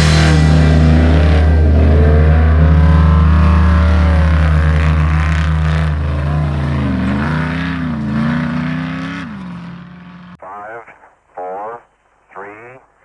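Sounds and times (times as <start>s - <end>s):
race vehicle engine running hard: 0.0s - 10.4s.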